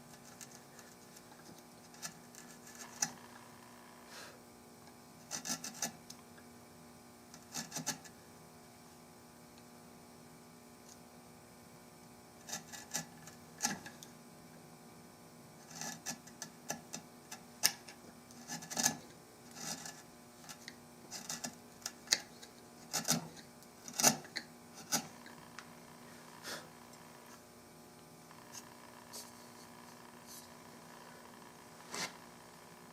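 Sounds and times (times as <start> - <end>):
hand tool scraping wood: 0.0 - 3.2, 5.2 - 6.0, 7.4 - 8.2, 12.4 - 14.0, 15.6 - 17.0, 17.6 - 25.4, 31.8 - 32.2
faint steady hum: 0.0 - 32.9.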